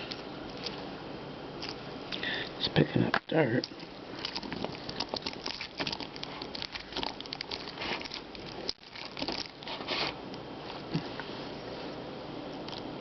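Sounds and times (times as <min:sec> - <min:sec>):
sticky putty crackling on keyboard: 0:03.7 - 0:09.7.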